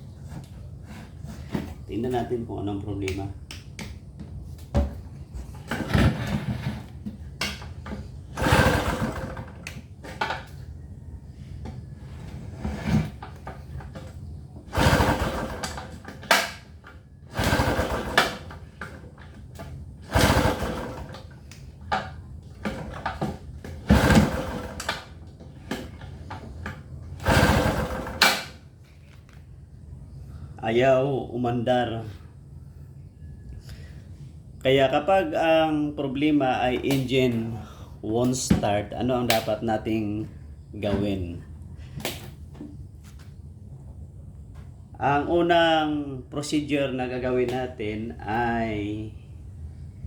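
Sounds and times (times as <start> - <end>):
generator recoil starter cranking: 7.5 - 10.6, 14.6 - 28.6.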